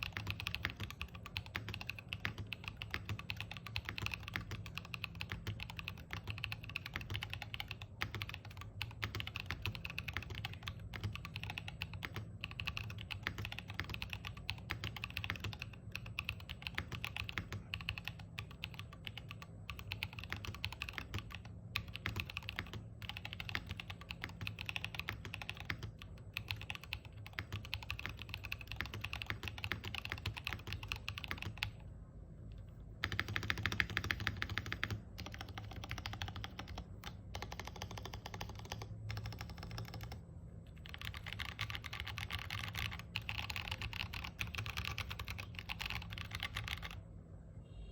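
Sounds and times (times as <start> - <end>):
typing on mechanical keyboard: 0.0 - 31.8, 33.0 - 47.0.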